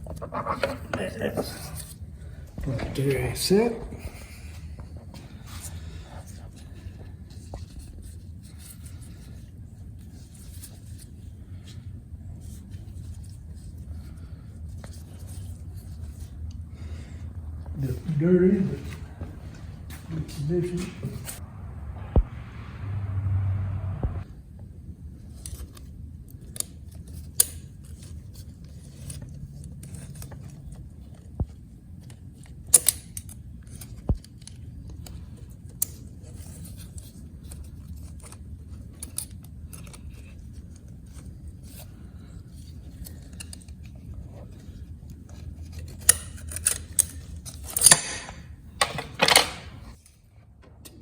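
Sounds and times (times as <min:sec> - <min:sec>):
metal parts clicking and clinking: 0:45.3 - 0:49.9.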